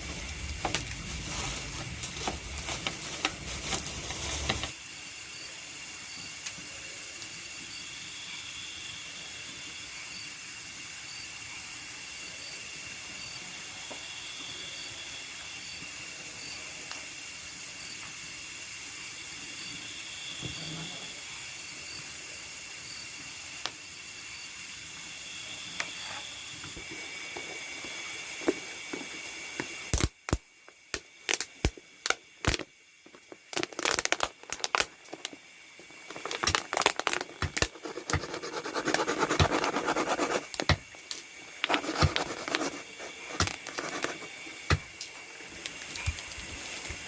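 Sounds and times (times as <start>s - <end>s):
scraping crinkling noise: 0.0s - 4.8s, 32.5s - 47.0s
night insects chorus: 0.0s - 47.0s.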